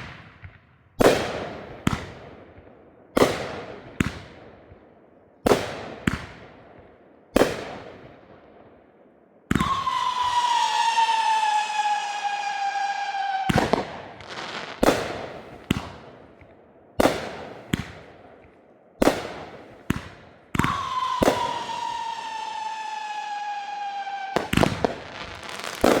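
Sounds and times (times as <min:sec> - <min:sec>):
firework bangs with echo: 0:09.5 - 0:26.0
firework whistle falling in pitch: 0:09.6 - 0:14.0, 0:20.6 - 0:26.0.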